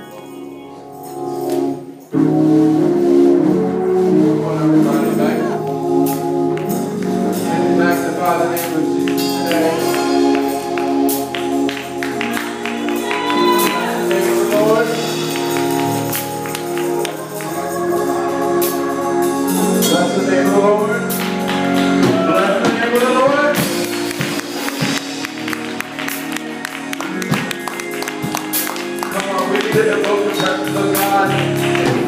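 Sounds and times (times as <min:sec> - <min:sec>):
band instruments: 0:00.0 - 0:32.0
gospel vocal group singing: 0:03.8 - 0:24.3.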